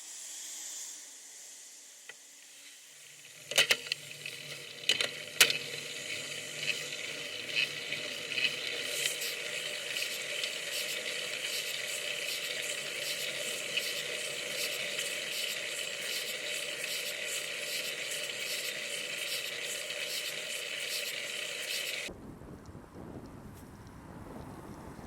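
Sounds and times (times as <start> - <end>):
low wind rumble: 22.1 - 25.0
road and wind noise hiss: 22.1 - 25.0.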